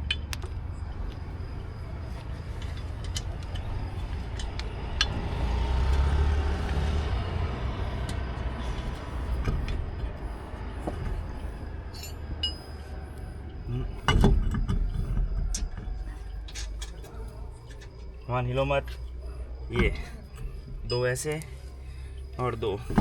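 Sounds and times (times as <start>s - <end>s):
heavy vehicle passing: 0.0s - 14.1s
metallic clicks of wheel nuts: 0.0s - 23.0s
road traffic passing: 0.0s - 23.0s.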